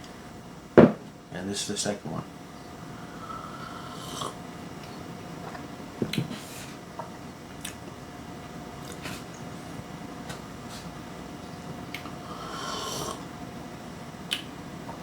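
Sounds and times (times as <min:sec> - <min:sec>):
faint steady hum: 0:00.0 - 0:15.0
slurping sip of coffee: 0:12.3 - 0:13.2.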